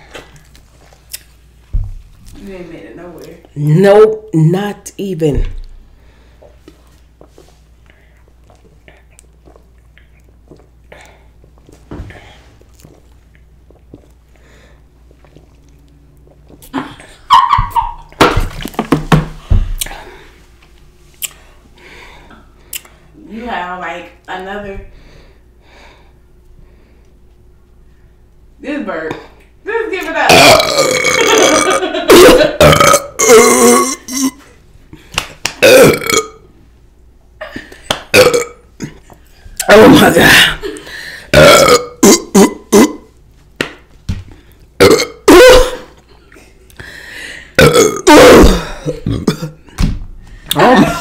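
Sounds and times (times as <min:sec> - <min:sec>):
person gulping soda: 0:08.4 - 0:11.6, 0:12.6 - 0:14.4, 0:30.3 - 0:34.4, 0:35.6 - 0:36.3
woman burping loudly: 0:30.2 - 0:34.4, 0:35.6 - 0:36.4, 0:38.1 - 0:39.0, 0:41.3 - 0:43.1, 0:44.8 - 0:46.0, 0:47.6 - 0:49.6, 0:50.5 - 0:51.0
person grunting: 0:47.6 - 0:49.4, 0:50.5 - 0:51.0.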